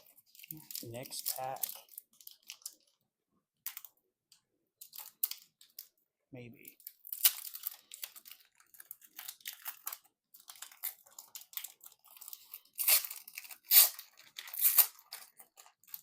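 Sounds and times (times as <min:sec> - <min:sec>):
wrapper crinkling and tearing: 0:00.0 - 0:03.0, 0:04.8 - 0:06.0, 0:06.6 - 0:16.0.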